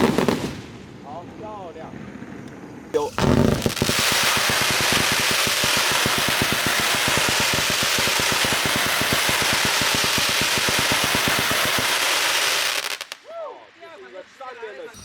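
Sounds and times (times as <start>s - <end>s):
fireworks launches popping: 3.0s - 13.2s.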